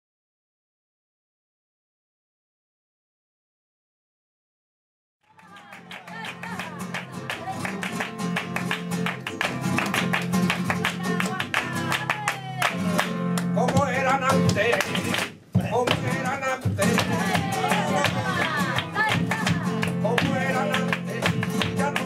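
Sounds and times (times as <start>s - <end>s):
person singing: 5.3s - 8.2s, 10.7s - 13.0s, 15.6s - 22.0s.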